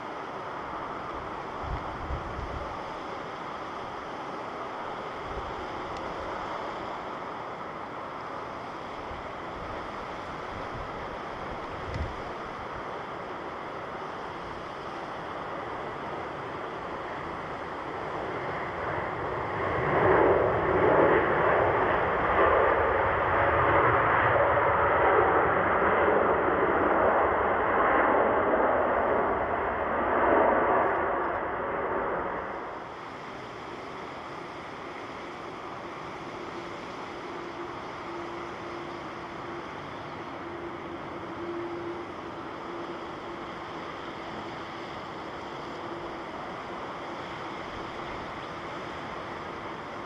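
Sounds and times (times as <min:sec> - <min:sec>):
jet airliner passing: 0:00.0 - 0:50.0
faint hum: 0:25.2 - 0:50.0.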